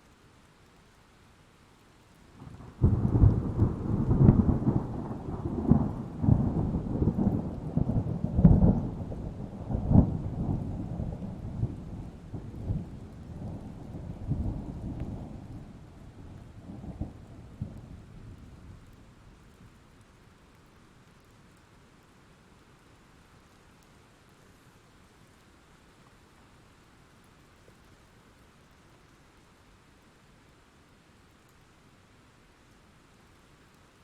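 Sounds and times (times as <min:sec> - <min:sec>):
light steady rain: 0:00.0 - 0:34.0
thunder crack and rolling rumble: 0:02.4 - 0:19.0.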